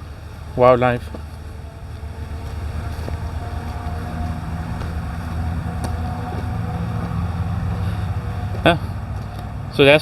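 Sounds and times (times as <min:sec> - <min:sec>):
engine humming: 0:00.0 - 0:10.0
low rumble: 0:00.0 - 0:10.0.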